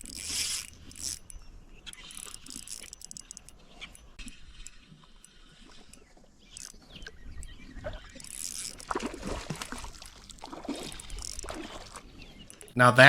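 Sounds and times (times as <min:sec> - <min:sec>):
fish splashing at water surface: 0:08.8 - 0:12.0.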